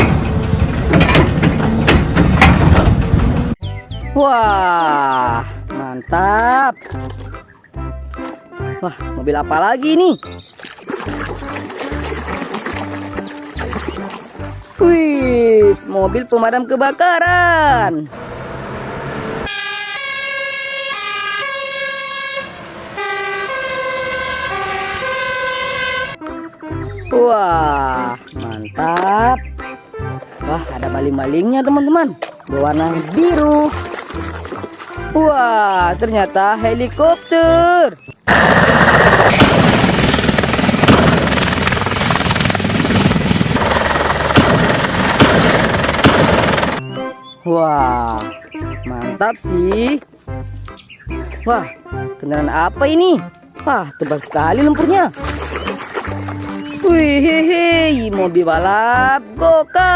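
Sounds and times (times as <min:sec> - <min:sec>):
fire engine siren hi-lo: 0:19.4 - 0:26.2
helicopter rotor blades chopping: 0:38.3 - 0:46.8.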